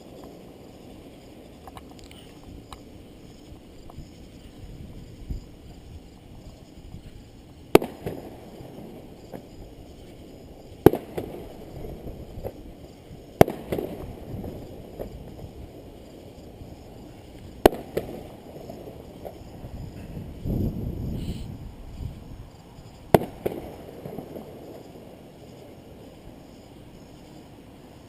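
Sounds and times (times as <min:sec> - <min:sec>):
small firework pops: 0:06.9 - 0:10.2, 0:10.8 - 0:12.6, 0:13.4 - 0:15.6, 0:17.2 - 0:19.5, 0:23.0 - 0:24.9
fireworks bangs: 0:07.6 - 0:15.8, 0:17.5 - 0:19.5, 0:23.0 - 0:25.7.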